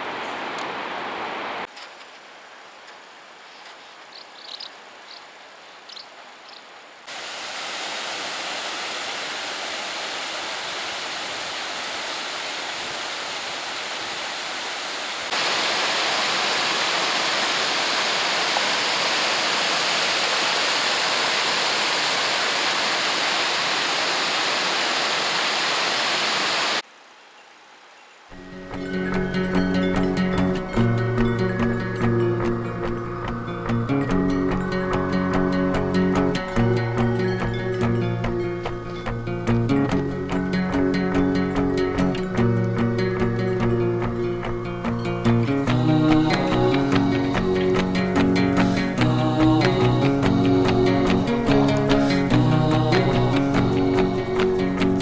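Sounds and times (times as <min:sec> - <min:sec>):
strummed guitar music: 0:28.4 - 0:55.0.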